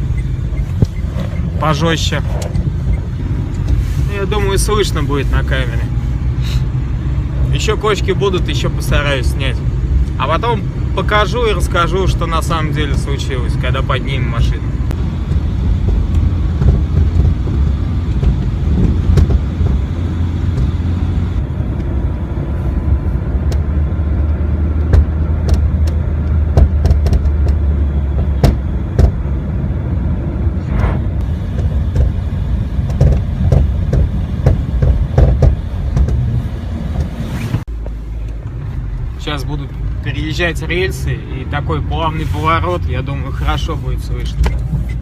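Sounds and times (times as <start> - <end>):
road and engine rumble: 0.0 - 45.0
suspension knocking: 14.9 - 22.0, 23.4 - 29.4, 31.2 - 38.0.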